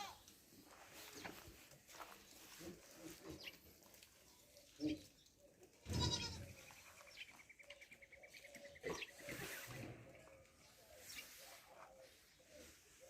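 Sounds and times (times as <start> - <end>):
goat bleating: 0.0 - 0.2, 5.8 - 6.6.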